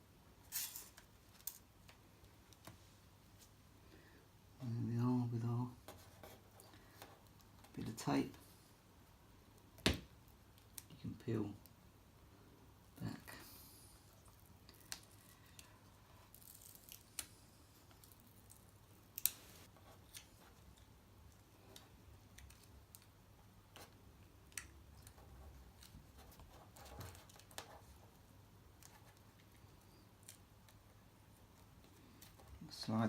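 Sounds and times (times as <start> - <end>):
small clicks of hands working on cable: 1.0 - 2.8, 20.0 - 26.0.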